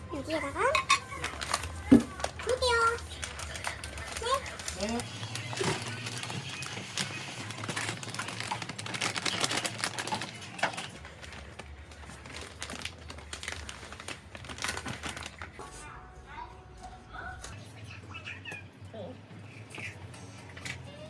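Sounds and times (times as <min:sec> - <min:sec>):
crinkling: 0:00.2 - 0:15.8.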